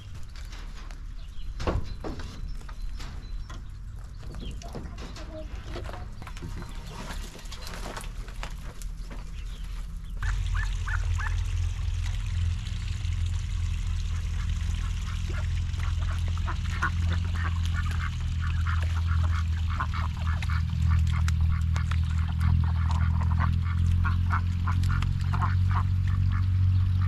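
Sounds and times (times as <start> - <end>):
low steady hum: 0.0 - 27.0
ducks quacking: 9.2 - 11.8, 13.6 - 27.0.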